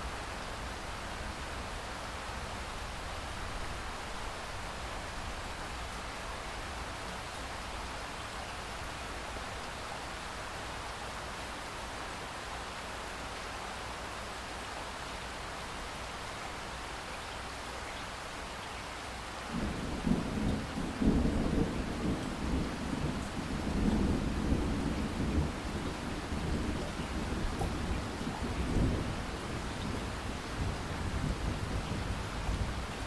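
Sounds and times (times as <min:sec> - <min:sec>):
thunder rumbling: 0:19.6 - 0:32.9
rain hissing: 0:19.6 - 0:33.0.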